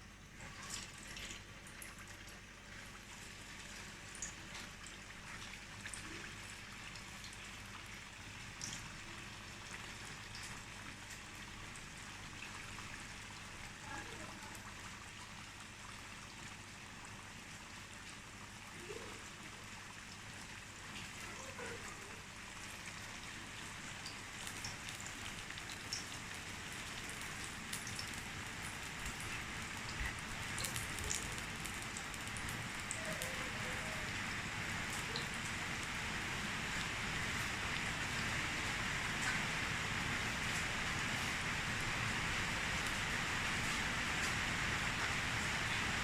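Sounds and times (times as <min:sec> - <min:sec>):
steady rain falling: 0:00.0 - 0:46.0
drips ticking: 0:24.0 - 0:33.3.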